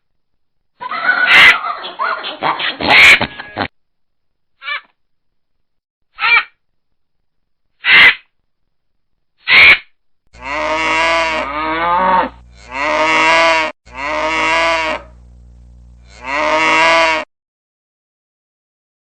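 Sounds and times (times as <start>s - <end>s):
cow mooing: 10.4s - 15.2s, 16.0s - 17.3s.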